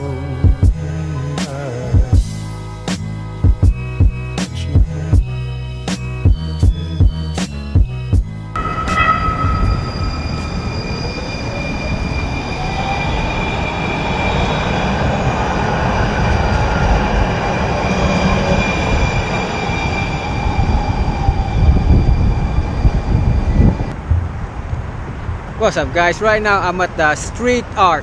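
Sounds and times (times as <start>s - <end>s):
wheels whining on rails: 8.5s - 25.6s
train rumbling past: 8.5s - 27.2s.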